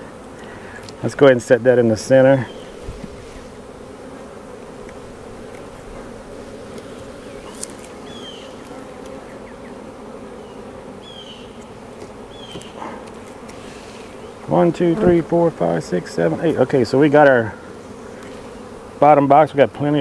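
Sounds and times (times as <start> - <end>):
honeybees buzzing: 0.0 - 20.0.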